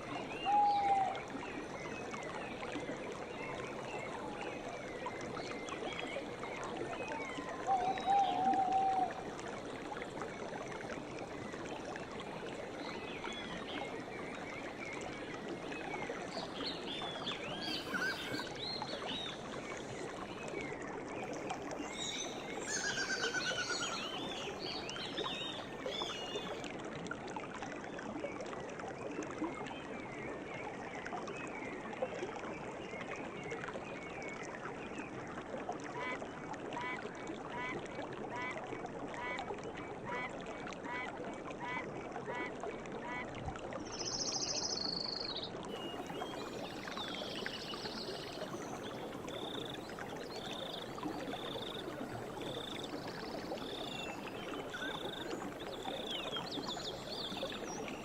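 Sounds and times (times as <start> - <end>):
songbirds chirping: 11.9 - 26.6, 44.0 - 58.0.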